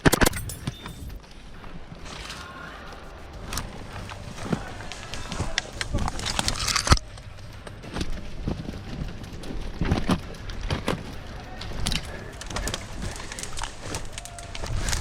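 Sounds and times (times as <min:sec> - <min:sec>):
sharp click: 0:00.0 - 0:01.2
rustling of kit: 0:08.0 - 0:15.0.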